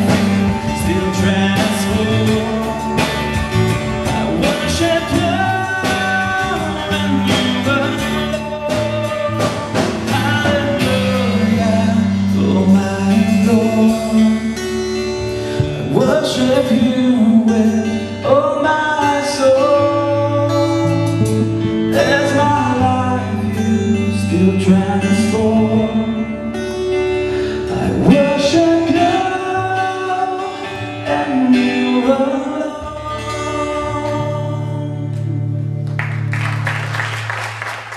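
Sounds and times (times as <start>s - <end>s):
drum kit: 0.0s - 25.8s
person singing: 0.0s - 35.8s
bass guitar: 0.0s - 37.9s
lead guitar: 0.0s - 37.9s.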